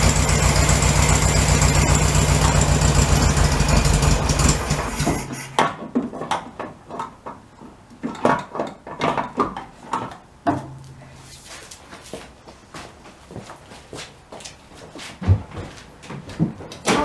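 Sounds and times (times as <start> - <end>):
car engine idling: 0.0 - 5.5.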